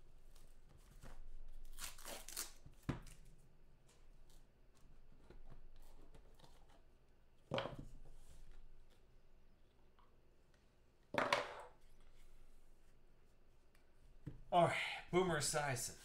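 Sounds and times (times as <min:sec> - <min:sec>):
card wrapper tearing and crinkling: 0:01.6 - 0:03.2.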